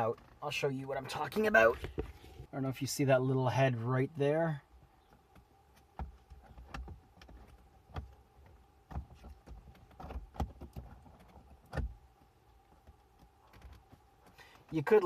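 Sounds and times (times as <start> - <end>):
plastic car trim clicks and knocks: 5.2 - 12.0.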